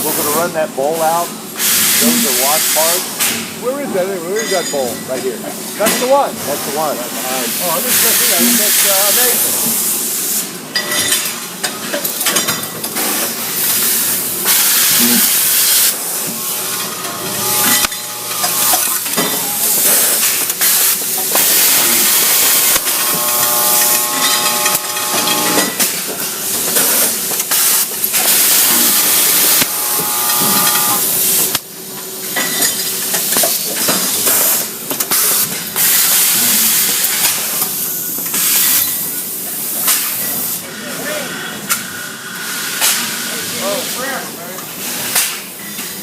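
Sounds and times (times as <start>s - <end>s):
factory machinery running: 0.0s - 46.0s
loud hissing bursts: 7.2s - 10.5s, 13.4s - 25.8s, 27.5s - 31.5s
pitched machine whine: 14.8s - 26.8s, 28.0s - 31.6s.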